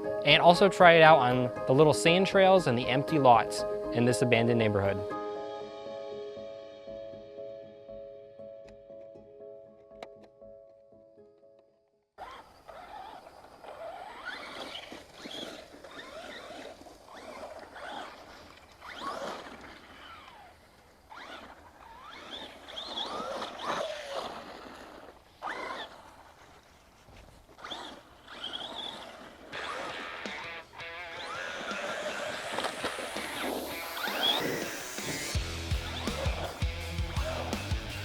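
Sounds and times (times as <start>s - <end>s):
toy truck motor whining: 12.2s - 37.5s
chassis knocking and squeaking: 27.5s - 36.5s.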